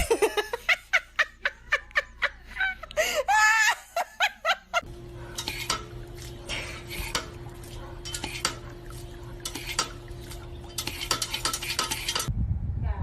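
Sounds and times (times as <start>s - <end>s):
steady hum: 4.8s - 12.8s
kitchenware clicking and clinking: 5.3s - 12.3s.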